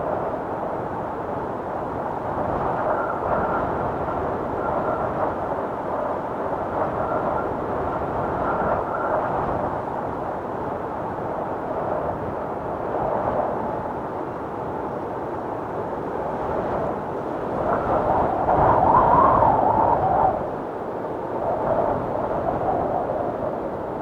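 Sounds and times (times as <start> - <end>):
strong wind rushing past microphone: 0.0 - 24.0.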